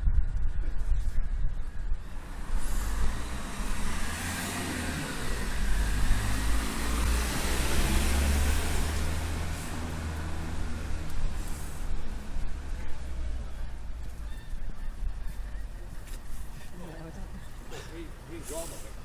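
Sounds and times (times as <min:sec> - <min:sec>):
steady low rumble: 0:00.0 - 0:04.2, 0:08.6 - 0:16.6
car passing by: 0:02.0 - 0:13.9.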